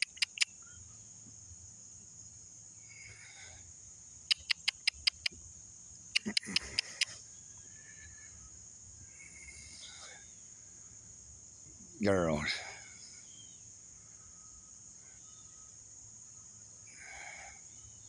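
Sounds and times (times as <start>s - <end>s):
rapid sharp clicks: 0.0s - 0.4s, 4.3s - 5.3s, 6.2s - 7.1s
high-pitched insect chorus: 0.0s - 18.0s.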